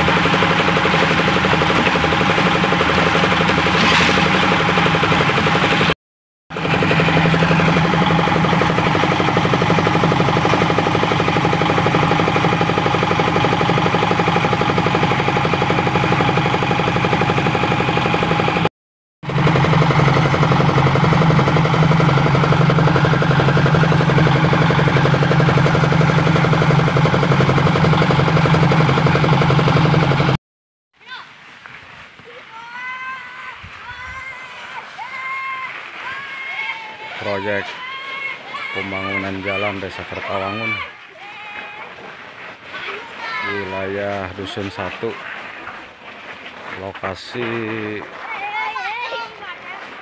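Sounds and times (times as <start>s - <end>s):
engine running: 0.0s - 30.4s, 34.2s - 50.0s.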